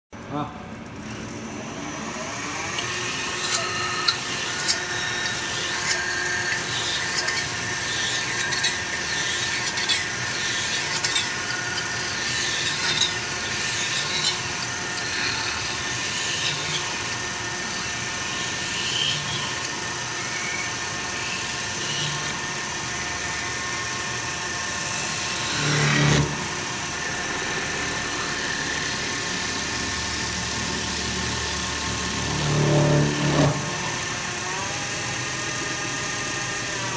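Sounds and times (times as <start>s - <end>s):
machine running with held tones: 0.7s - 36.9s
roller squealing on metal: 2.8s - 22.4s, 31.6s - 34.1s.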